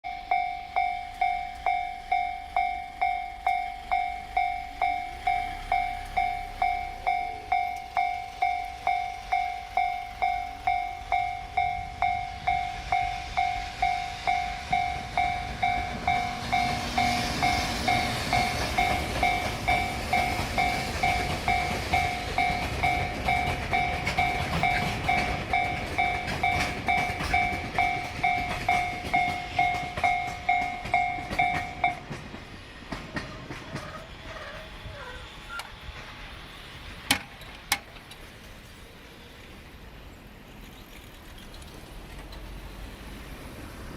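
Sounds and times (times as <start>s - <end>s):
level crossing alarm ringing: 0.0s - 32.4s
train wheels clattering over rail joints: 4.2s - 38.5s.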